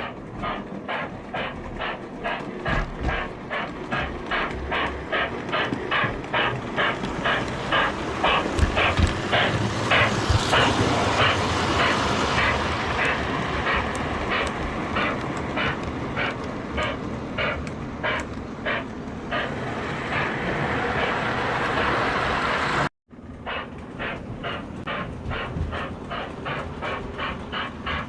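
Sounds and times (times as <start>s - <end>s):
model steam locomotive chuffing: 0.0s - 28.0s
wheels rumbling on track: 0.0s - 28.0s.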